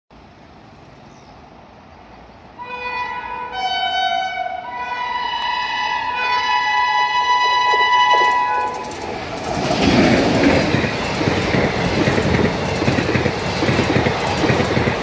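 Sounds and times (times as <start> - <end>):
locomotive horn blasts: 2.6 - 8.9.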